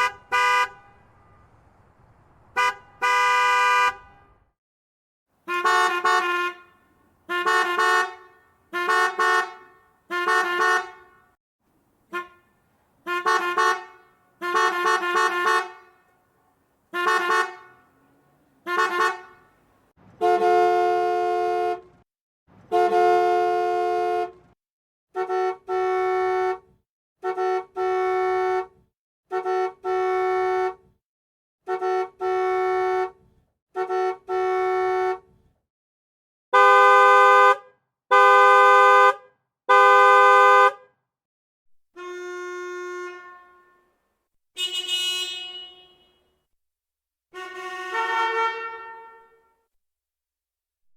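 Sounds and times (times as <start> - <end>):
car horns honking: 0.0 - 1.6, 2.5 - 4.5, 5.4 - 11.4, 12.1 - 16.2, 16.9 - 22.0, 22.6 - 24.6, 25.2 - 30.9, 31.7 - 33.2, 33.8 - 35.3, 36.5 - 40.8, 42.0 - 44.0, 44.6 - 46.4, 47.3 - 49.6.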